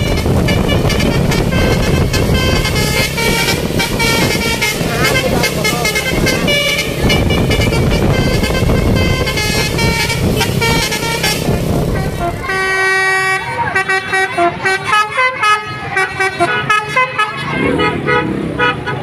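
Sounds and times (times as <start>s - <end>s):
steady low rumble: 0.0s - 14.6s
multi-tone bus horn melody: 0.0s - 19.0s.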